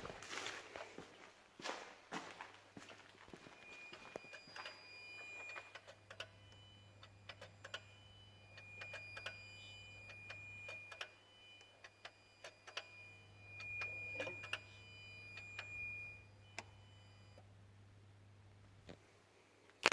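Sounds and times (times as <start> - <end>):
steady low hum: 0.0 - 19.3
high electronic beeps: 3.5 - 17.4
irregular electrical clicking: 3.9 - 7.9, 8.5 - 13.0, 13.6 - 15.9.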